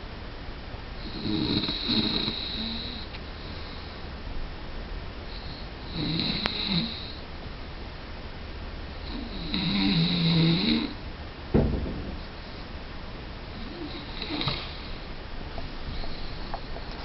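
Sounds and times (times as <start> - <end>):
sudden thump: 11.5 - 12.6.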